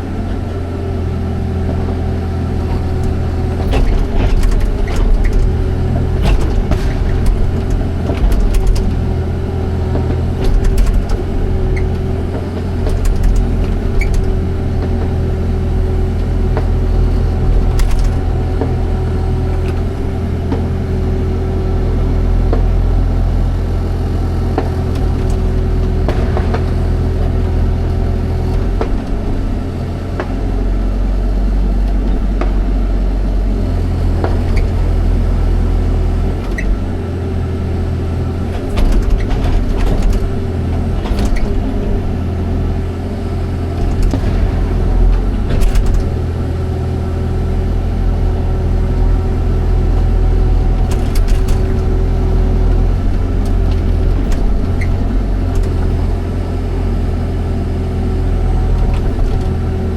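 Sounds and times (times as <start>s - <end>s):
diesel engine running: 0.0s - 59.9s
knocks and clanks: 1.6s - 15.7s, 24.6s - 30.5s, 38.2s - 47.7s, 50.7s - 56.3s.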